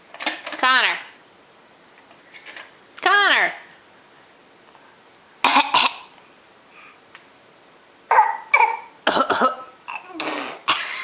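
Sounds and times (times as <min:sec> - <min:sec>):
child coughing: 0:05.4 - 0:06.1, 0:08.1 - 0:11.0.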